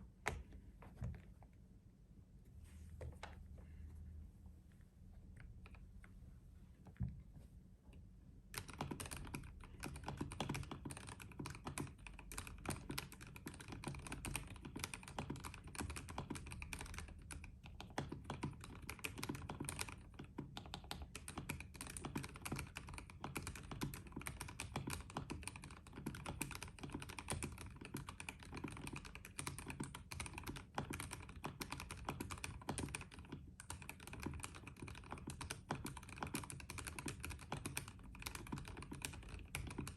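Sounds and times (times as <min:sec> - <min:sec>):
mechanical keyboard typing: 0:08.5 - 0:39.9.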